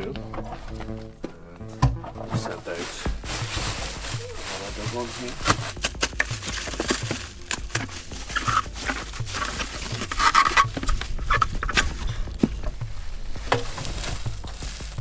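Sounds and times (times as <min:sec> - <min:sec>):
plastic buckets knocking: 0:01.8 - 0:12.9
plastic wrapping crinkling: 0:02.8 - 0:12.8.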